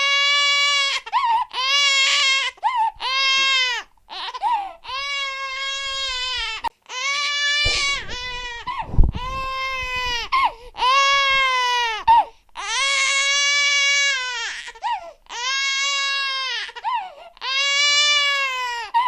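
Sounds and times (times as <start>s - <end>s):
low thump: 7.7s - 10.4s
infant crying: 10.8s - 19.0s.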